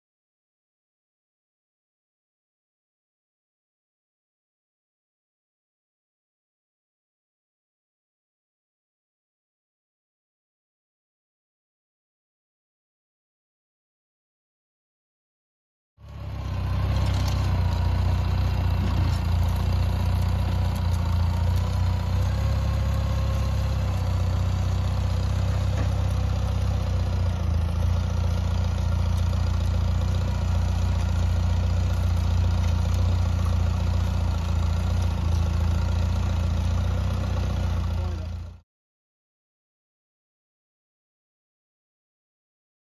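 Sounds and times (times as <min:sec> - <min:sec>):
engine running with deep rumble: 0:16.0 - 0:38.6.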